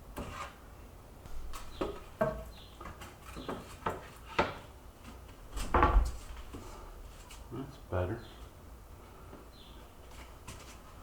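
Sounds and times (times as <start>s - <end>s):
wooden knocks and clunks: 1.3s - 4.6s, 5.5s - 6.7s.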